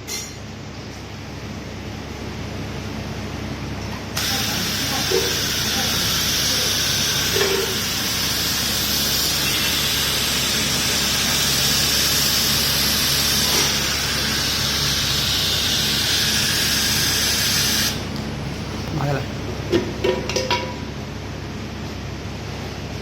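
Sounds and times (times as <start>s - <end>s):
low machine hum: 0.0s - 23.0s
welding arc hissing: 4.2s - 19.2s.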